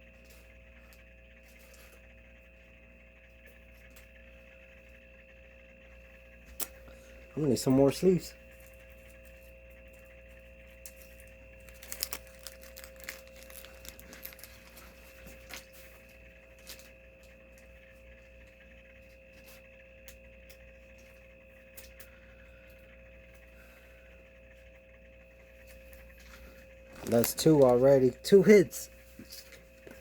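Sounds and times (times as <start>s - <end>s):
faint electronic whine: 0.0s - 30.0s
trading cards rustling: 11.6s - 15.7s, 26.9s - 28.6s.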